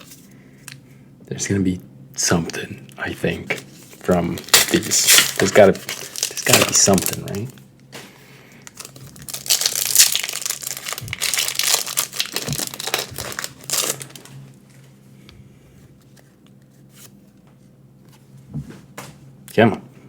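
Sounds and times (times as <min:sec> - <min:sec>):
foil wrapper crinkling: 0:03.0 - 0:07.6, 0:08.6 - 0:14.5
wrapper tearing open: 0:04.3 - 0:07.6, 0:08.6 - 0:14.4.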